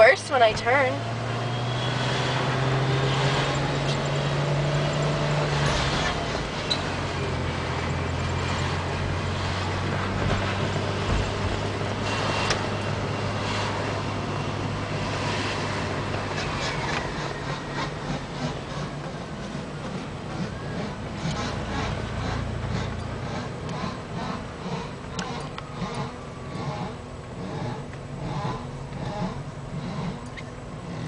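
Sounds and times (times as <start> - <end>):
person talking: 0.0 - 1.0
car engine running: 0.0 - 31.0
wheel rubbing noise: 0.0 - 31.0.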